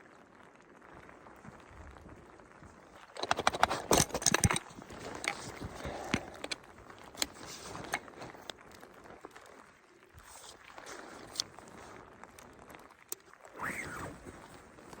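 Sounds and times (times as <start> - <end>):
camping gear rattling clicks: 3.0 - 8.6, 10.3 - 11.8
gear rustling: 3.0 - 8.6.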